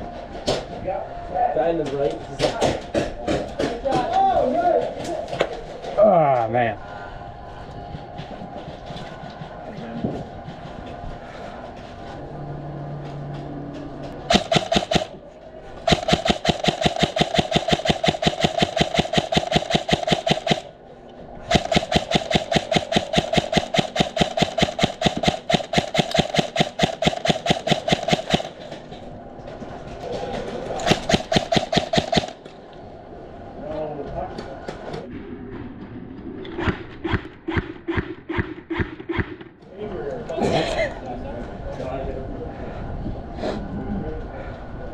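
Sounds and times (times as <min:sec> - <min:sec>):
airsoft rifle firing full-auto: 0:14.3 - 0:20.7, 0:21.5 - 0:28.7, 0:30.8 - 0:32.4.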